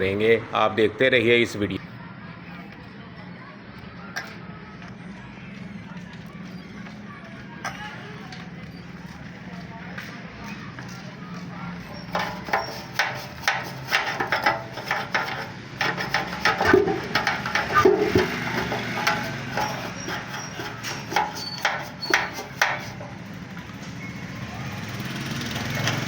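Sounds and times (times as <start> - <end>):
knocking on steel fuel tank: 12.2 - 20.3.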